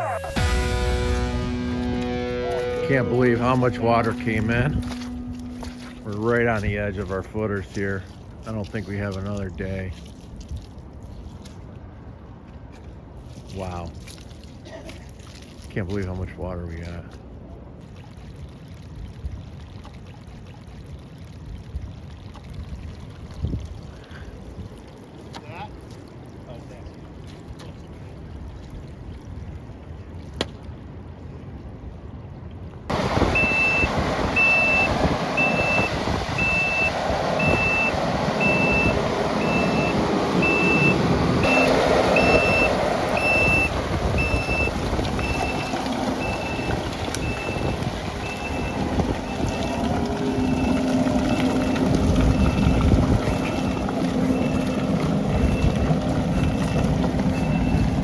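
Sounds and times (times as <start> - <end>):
backup alarm beeping: 0.0 - 6.9, 32.9 - 58.0
machinery engine running: 0.0 - 7.5, 32.9 - 58.0
wind-like rumble: 32.9 - 58.0.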